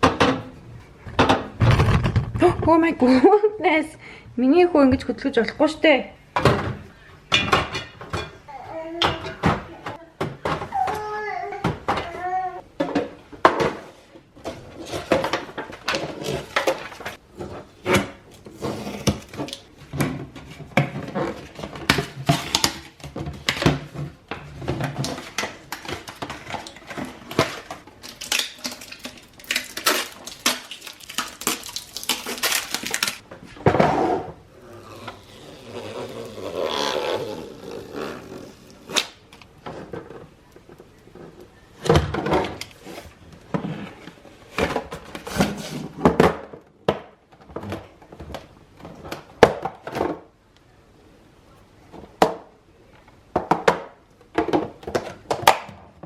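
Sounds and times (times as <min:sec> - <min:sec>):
dishes and containers clattering: 0:00.0 - 0:02.8, 0:06.4 - 0:10.9, 0:12.8 - 0:34.4.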